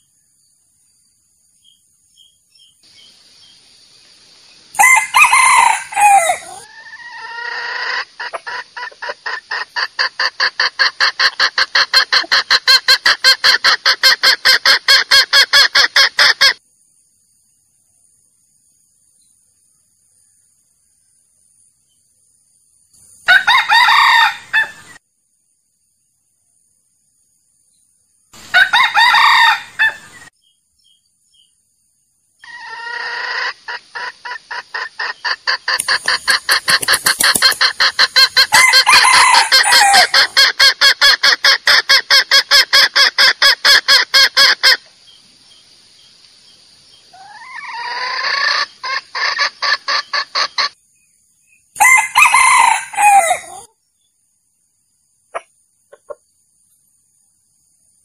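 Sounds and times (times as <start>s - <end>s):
rooster crowing: 4.8s - 8.0s, 23.2s - 25.0s, 28.5s - 30.2s, 38.4s - 40.4s, 51.8s - 53.7s
rapid clucking: 7.5s - 16.6s, 33.4s - 38.7s.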